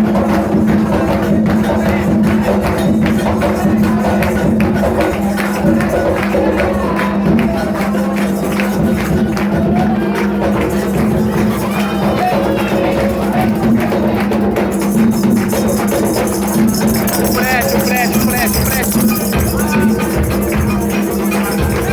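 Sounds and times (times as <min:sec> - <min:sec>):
tambourine beat: 0:00.0 - 0:21.9.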